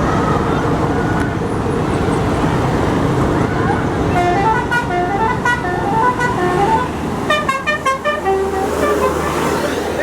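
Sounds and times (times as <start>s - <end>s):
musical bus horn tune: 4.1s - 10.0s.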